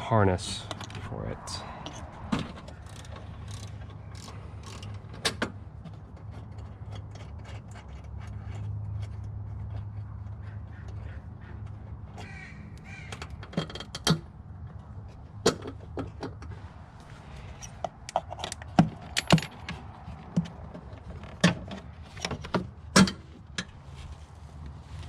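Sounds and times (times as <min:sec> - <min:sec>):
metal tools clinking: 0:17.4 - 0:19.8.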